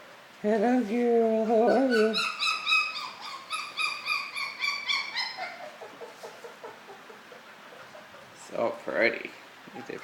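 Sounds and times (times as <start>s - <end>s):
puppy whining: 1.6s - 8.4s.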